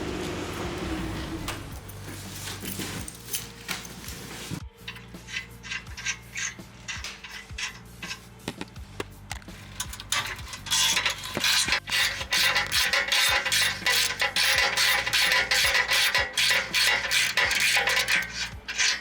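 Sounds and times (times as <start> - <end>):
ratchet wrench clicking: 4.8 - 19.0.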